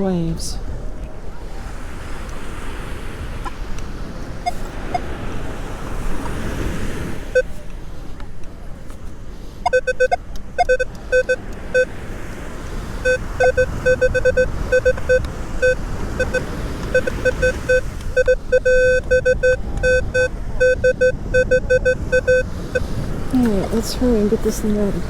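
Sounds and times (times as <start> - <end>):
metal detector beeps: 4.4 - 5.1, 7.3 - 7.6, 9.6 - 11.9, 13.0 - 22.9
steady background rush: 7.1 - 25.0.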